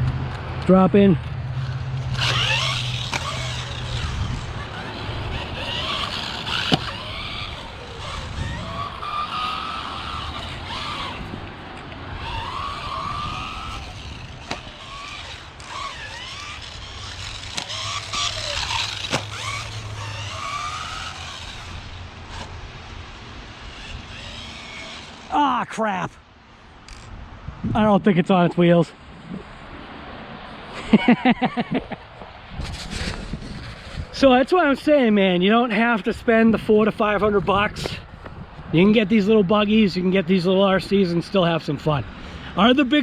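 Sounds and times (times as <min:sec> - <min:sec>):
electric motor whining: 0:01.5 - 0:25.5.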